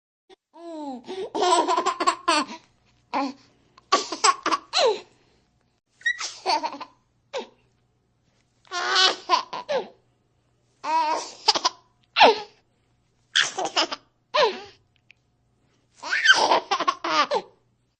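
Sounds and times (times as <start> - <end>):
baby giggling: 6.0 - 7.5, 16.0 - 17.5.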